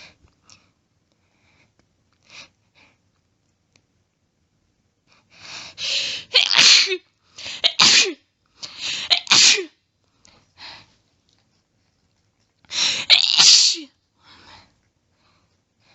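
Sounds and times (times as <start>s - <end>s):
soft breaths: 0.0s - 3.2s, 5.0s - 6.3s, 10.0s - 13.1s, 14.0s - 15.9s
woman sneezing: 6.2s - 8.2s, 8.9s - 9.7s, 12.8s - 13.9s.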